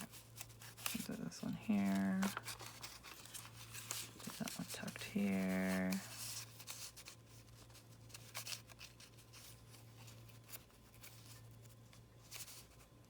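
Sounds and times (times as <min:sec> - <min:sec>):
low steady hum: 0:00.0 - 0:13.0
paper rustling: 0:00.0 - 0:13.0.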